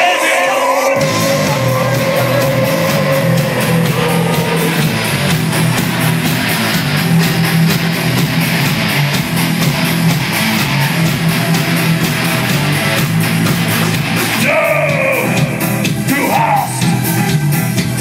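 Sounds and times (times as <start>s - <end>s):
heavy metal band playing: 0.0s - 18.0s
high gliding held line: 0.9s - 6.4s.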